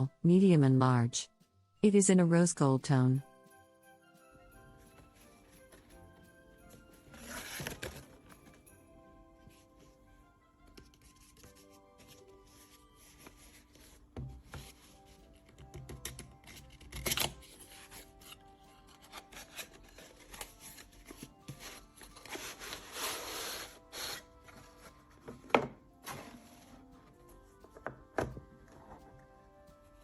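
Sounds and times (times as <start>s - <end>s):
soft background music: 0.0s - 30.0s
packaging rustling: 6.8s - 8.7s, 17.0s - 25.0s
packaging scrape: 7.1s - 8.3s, 17.0s - 25.0s.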